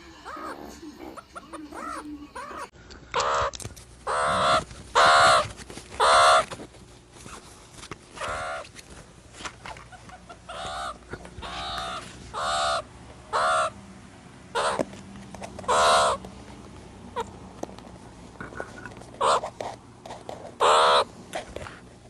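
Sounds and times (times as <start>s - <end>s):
meerkat harsh calls: 0.2s - 6.5s, 8.2s - 8.7s, 9.9s - 13.8s, 14.5s - 14.8s, 15.7s - 16.2s, 19.2s - 19.5s, 20.6s - 21.1s.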